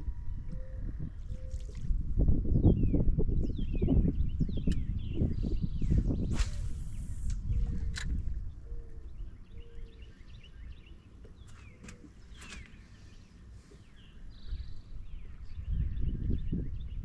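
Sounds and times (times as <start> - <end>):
faint bird chirps: 8.5 - 17.0.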